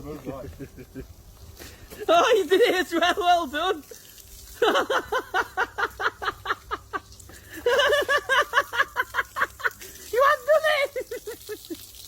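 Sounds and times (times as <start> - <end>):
person laughing: 0.3 - 1.1, 4.6 - 11.8.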